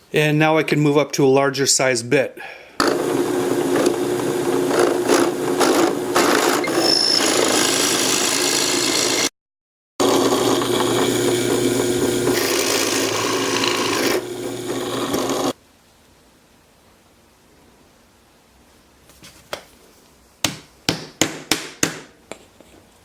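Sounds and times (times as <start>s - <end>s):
power drill boring through wood: 2.8s - 9.3s, 10.0s - 15.6s.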